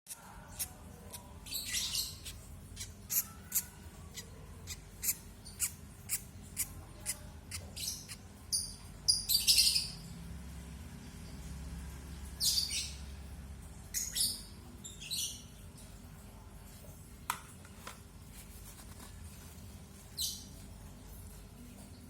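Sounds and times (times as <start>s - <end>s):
bird chicks peeping: 0.1s - 10.2s.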